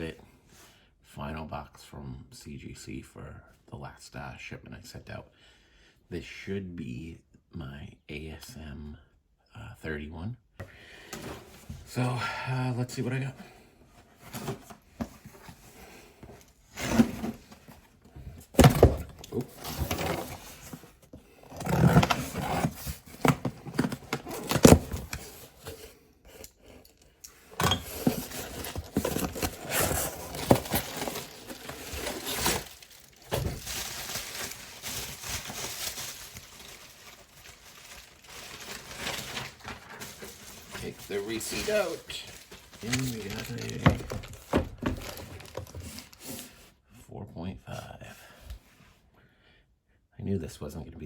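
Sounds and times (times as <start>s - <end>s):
cardboard and packing rustling: 11.1s - 12.0s, 13.2s - 26.1s, 27.4s - 46.7s.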